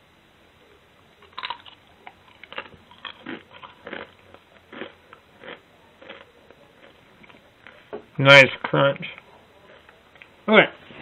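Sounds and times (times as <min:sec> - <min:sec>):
chips being crunched: 0:01.2 - 0:07.8.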